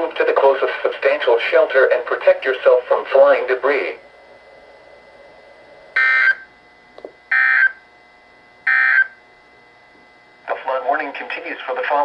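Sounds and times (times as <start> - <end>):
buzzy digital data tones: 1.0 - 9.2.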